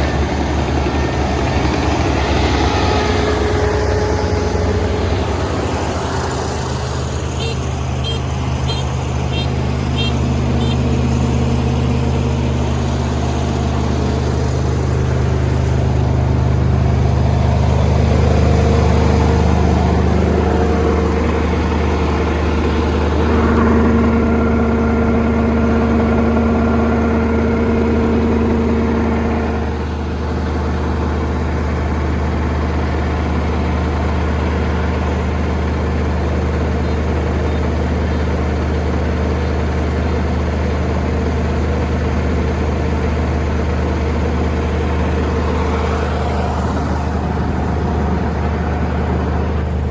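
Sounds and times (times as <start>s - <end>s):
high steady whine: 0.0s - 36.0s
combine harvester running: 0.0s - 49.9s.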